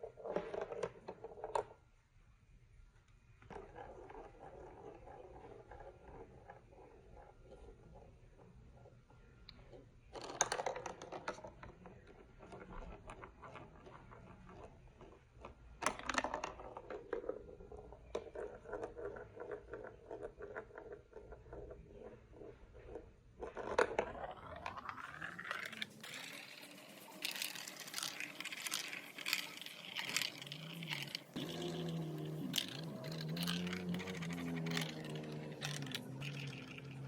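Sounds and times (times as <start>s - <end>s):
plastic blocks and marbles clicking: 9.5s - 21.8s, 23.4s - 37.0s.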